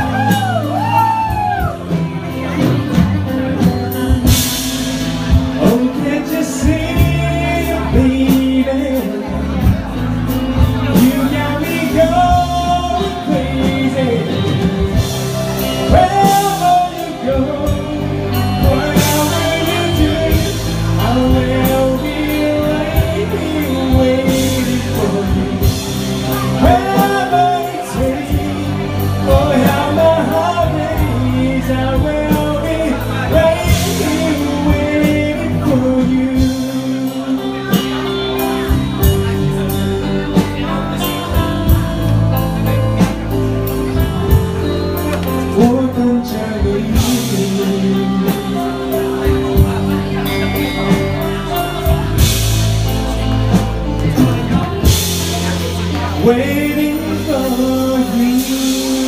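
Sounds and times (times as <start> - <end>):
backing band with drums and bass: 0.0 - 59.0
person singing: 0.0 - 59.0.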